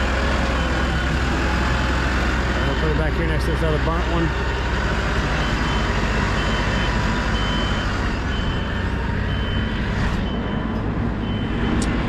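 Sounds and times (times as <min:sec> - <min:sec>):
heavy engine running: 0:00.0 - 0:12.0
back-up alarm beeping: 0:05.2 - 0:11.9.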